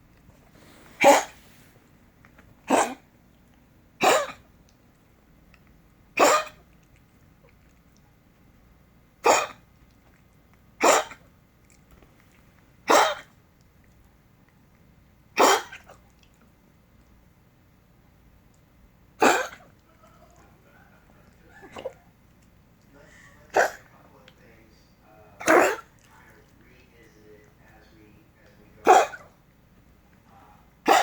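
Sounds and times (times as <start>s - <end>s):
dog coughing: 0.6s - 1.6s, 2.6s - 3.1s, 4.0s - 4.5s, 6.2s - 6.7s, 9.2s - 9.7s, 10.8s - 11.3s, 12.8s - 13.4s, 15.4s - 16.0s, 19.2s - 19.8s, 21.2s - 22.1s, 23.4s - 23.9s, 25.4s - 26.0s, 28.8s - 29.4s.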